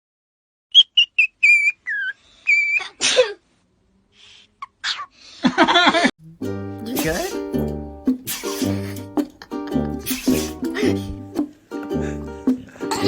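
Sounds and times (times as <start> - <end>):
high whistle-like chirps: 0.7 - 2.8
pet sneezing: 7.0 - 7.5, 8.2 - 9.2, 10.0 - 11.2.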